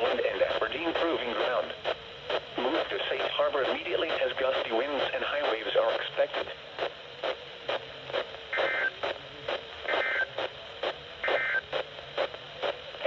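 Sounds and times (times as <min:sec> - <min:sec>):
crackling static pops: 0:00.0 - 0:13.0
harsh digital data bursts: 0:08.5 - 0:09.0, 0:09.9 - 0:10.4, 0:11.2 - 0:11.6.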